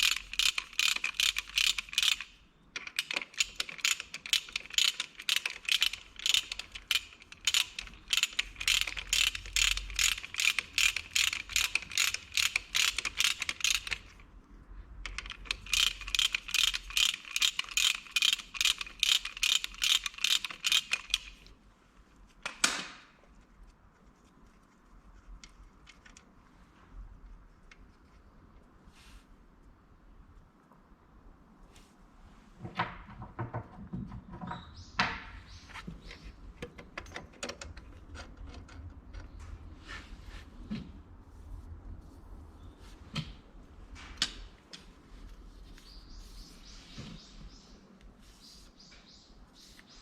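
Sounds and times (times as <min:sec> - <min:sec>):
ratchet wrench clicking: 0:00.0 - 0:14.2, 0:15.1 - 0:21.5.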